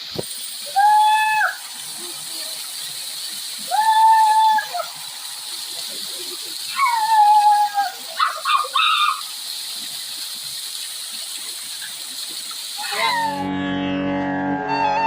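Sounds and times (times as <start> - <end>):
waterfall rushing: 0.0 - 13.5
short high calls: 0.6 - 2.8, 3.6 - 5.6, 6.6 - 9.4, 12.8 - 13.5.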